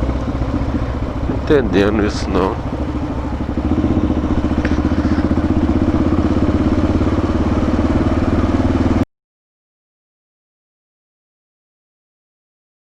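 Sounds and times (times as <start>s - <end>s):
motorcycle engine running: 0.0s - 9.1s.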